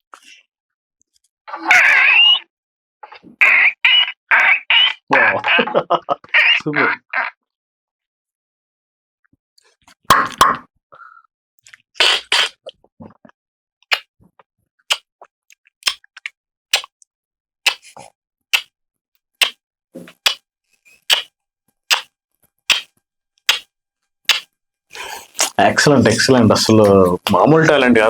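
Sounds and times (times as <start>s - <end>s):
mouth clicks: 10.1s - 13.3s, 13.9s - 15.1s, 15.8s - 17.0s, 17.7s - 18.7s, 19.4s - 20.4s, 21.0s - 21.3s, 21.9s - 22.1s, 22.7s - 22.9s, 23.5s - 23.7s, 24.3s - 25.7s.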